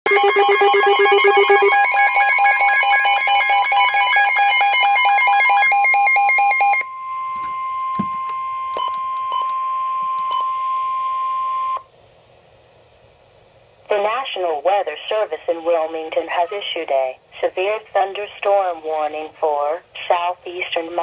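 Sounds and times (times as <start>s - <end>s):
steady loud alarm tone: 0.0s - 11.8s
rapid warbling electronic beep: 0.1s - 3.6s.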